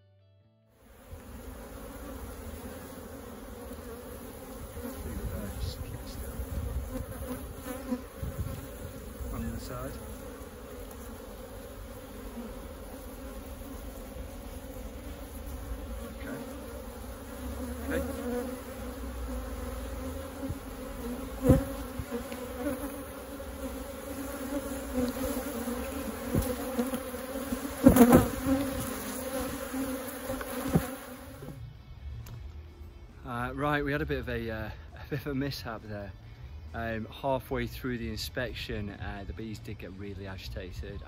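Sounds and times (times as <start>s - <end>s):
honeybees buzzing: 0.8s - 31.7s.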